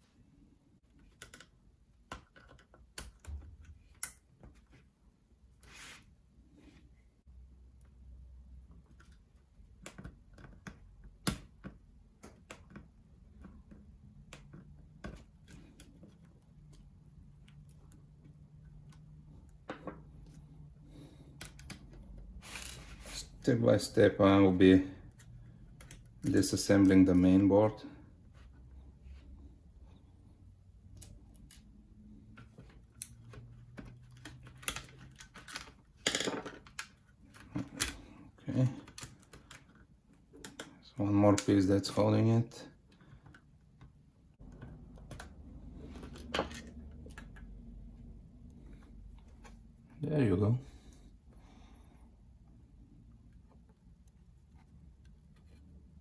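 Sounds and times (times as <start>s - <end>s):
laptop parts clicking and tapping: 0.9s - 4.8s, 8.6s - 22.8s, 25.1s - 26.4s, 30.7s - 38.2s, 38.8s - 41.6s, 42.8s - 49.6s.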